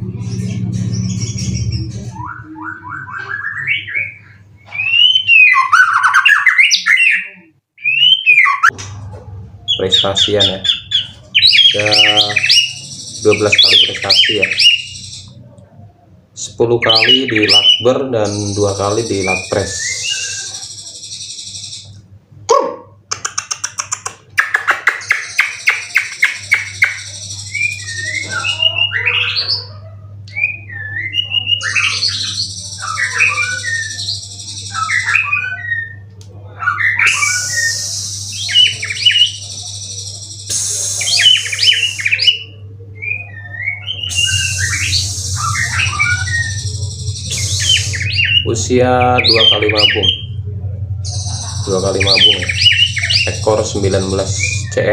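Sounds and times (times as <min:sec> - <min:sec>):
low hum: 0:00.0 - 0:02.8, 0:43.9 - 0:54.9
bird singing whistled phrases: 0:00.3 - 0:08.7, 0:09.9 - 0:15.4, 0:16.8 - 0:21.9, 0:24.4 - 0:29.7, 0:30.3 - 0:36.0, 0:36.8 - 0:50.4, 0:51.0 - 0:54.9
high hiss: 0:40.5 - 0:42.2, 0:44.1 - 0:48.2.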